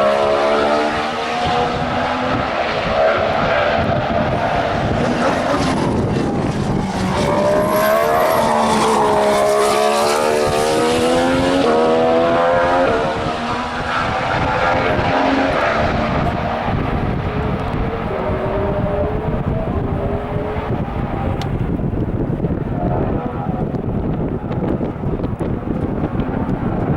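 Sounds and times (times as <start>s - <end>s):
racing car accelerating past: 0.0s - 21.2s.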